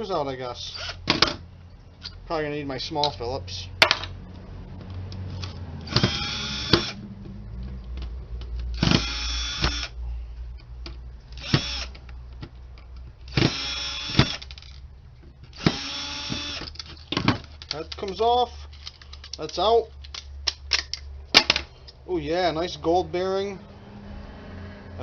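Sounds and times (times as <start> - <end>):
power screwdriver motor whining: 5.3 - 7.0, 8.8 - 10.0, 11.4 - 12.0, 13.3 - 14.6, 15.5 - 16.8.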